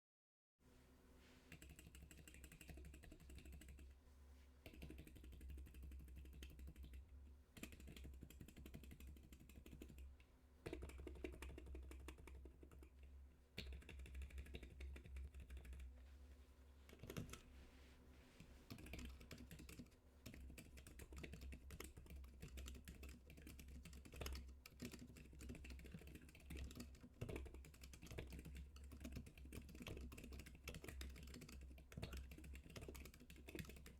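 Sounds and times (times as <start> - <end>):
steady low hum: 0.6 - 27.6
soft keyboard typing: 1.5 - 4.0, 4.6 - 16.0, 16.9 - 17.5, 18.4 - 33.9.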